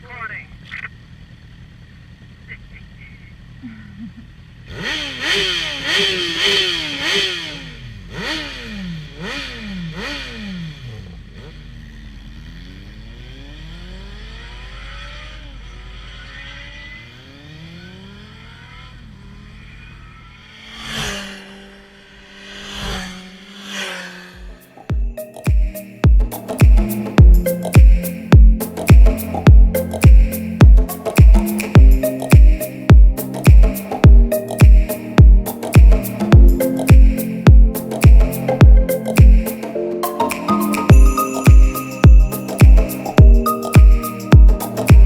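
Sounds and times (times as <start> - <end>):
motorcycle engine revving: 0.5 - 25.2, 26.1 - 39.5.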